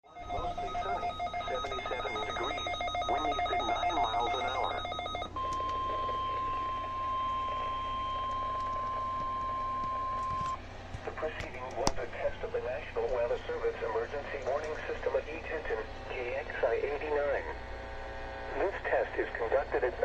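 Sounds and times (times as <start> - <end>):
radio warning alarm tone: 0.0 - 10.7.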